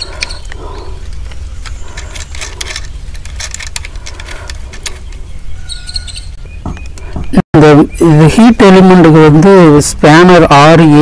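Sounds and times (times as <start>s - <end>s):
small parts and tools clicking: 0.0s - 5.2s.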